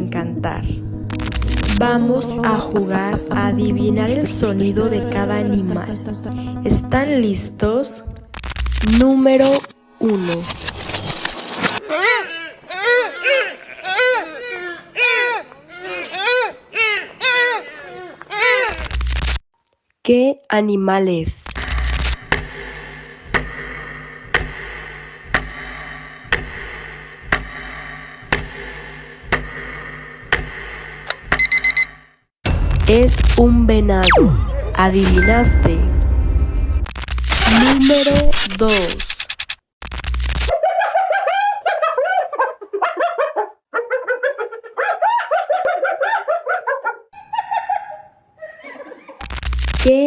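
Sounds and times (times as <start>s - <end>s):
hyena giggling: 11.8s - 18.8s, 40.6s - 49.2s
clock-like ticking: 22.2s - 31.9s
bell-like rings: 35.0s - 36.0s.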